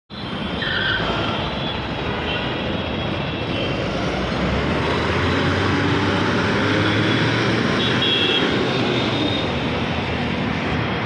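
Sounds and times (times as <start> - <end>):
traffic noise: 0.1 - 11.0
vehicle engine: 3.5 - 11.0.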